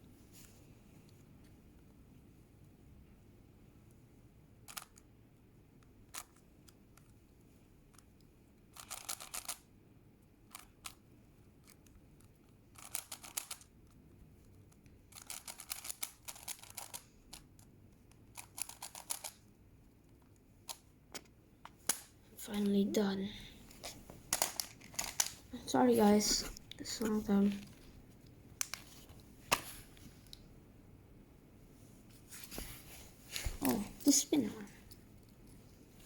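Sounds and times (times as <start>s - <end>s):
puzzle cube clicking: 8.7s - 9.6s, 11.6s - 13.7s, 14.8s - 17.4s, 18.1s - 19.4s, 24.3s - 25.4s.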